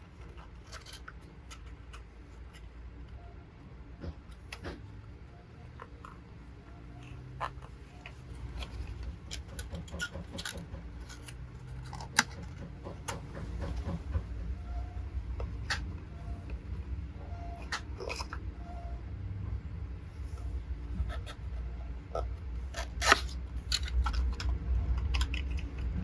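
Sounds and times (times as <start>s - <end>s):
small plastic parts clicking: 0.0s - 3.1s, 6.9s - 14.3s, 22.7s - 26.0s
low steady hum: 0.0s - 26.0s.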